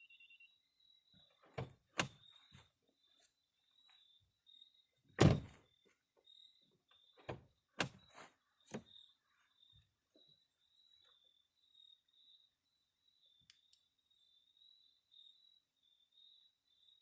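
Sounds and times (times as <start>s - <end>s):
car door heavy thunk: 5.2s - 5.6s.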